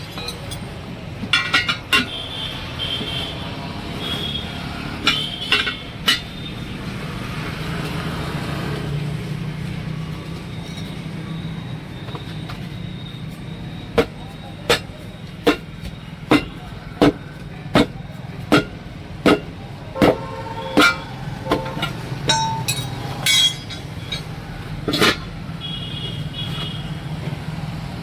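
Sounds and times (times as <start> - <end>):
tools clanking on metal: 0.0 - 2.3, 5.0 - 6.5, 13.9 - 25.4.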